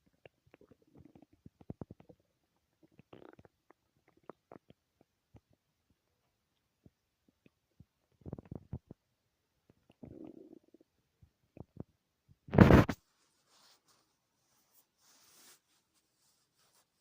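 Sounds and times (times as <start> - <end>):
stomach growling: 0.0 - 5.7, 6.9 - 9.1, 9.7 - 12.0.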